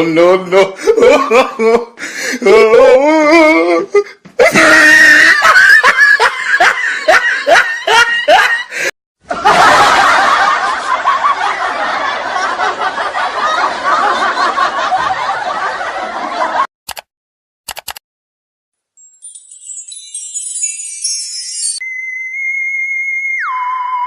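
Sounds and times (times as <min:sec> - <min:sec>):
laughter sound effects: 0:00.5 - 0:02.0, 0:05.2 - 0:16.7.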